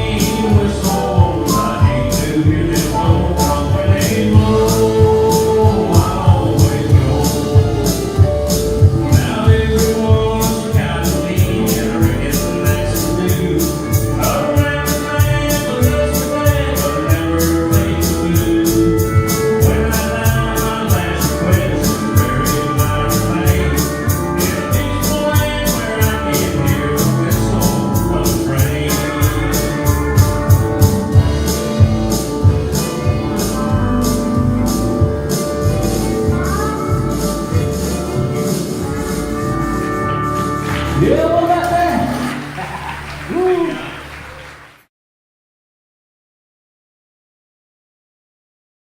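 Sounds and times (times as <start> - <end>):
country band playing: 0.0 - 44.7
drums beating: 0.0 - 44.8.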